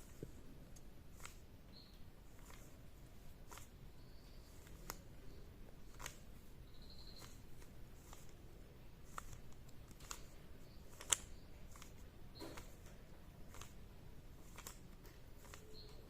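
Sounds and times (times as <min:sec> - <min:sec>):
plastic puzzle cube clicks: 0:04.4 - 0:16.0.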